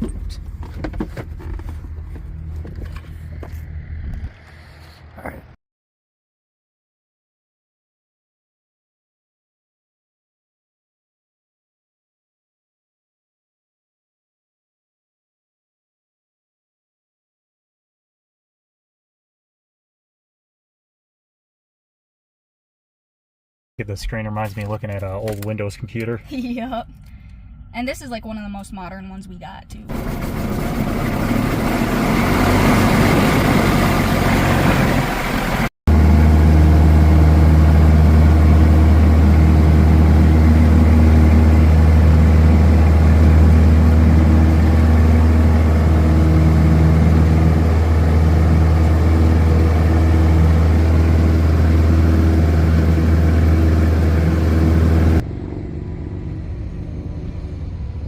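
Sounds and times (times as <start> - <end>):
piston aircraft engine droning: 0.0 - 5.6, 29.8 - 58.0.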